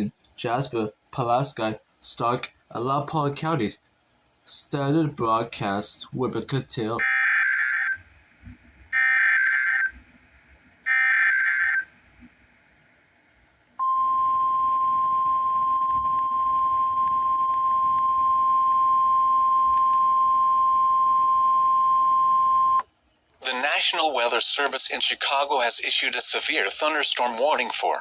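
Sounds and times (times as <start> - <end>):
steady alarm tone: 7.0 - 8.0, 8.9 - 9.9, 10.9 - 11.9.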